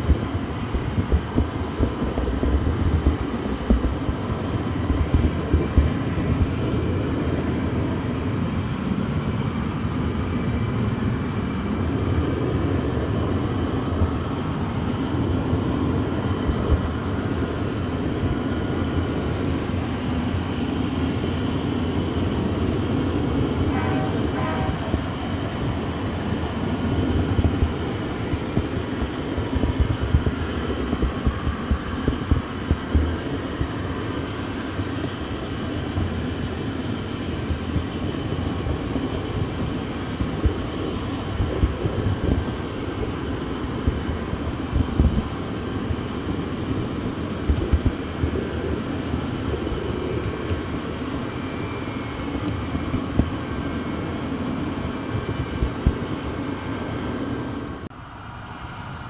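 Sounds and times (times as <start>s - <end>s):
knocks of train wheels: 0.0s - 7.9s, 22.6s - 48.5s
train rumbling on track: 0.0s - 59.0s.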